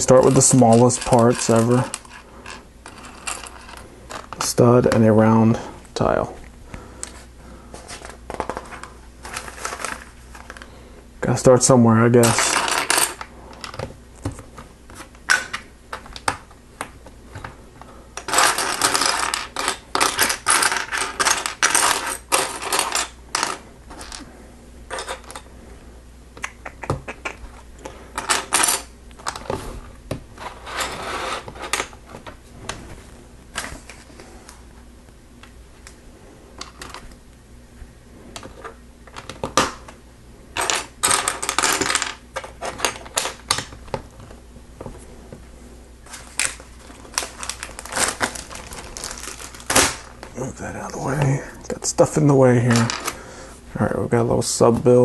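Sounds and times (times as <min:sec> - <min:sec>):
plastic bricks clattering and clicking: 0:18.2 - 0:24.2.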